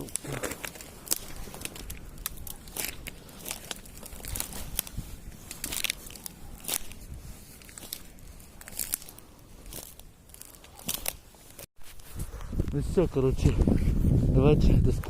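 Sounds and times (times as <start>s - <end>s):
footsteps through undergrowth: 0.0s - 12.6s
twigs crackling and rustling: 0.0s - 14.2s.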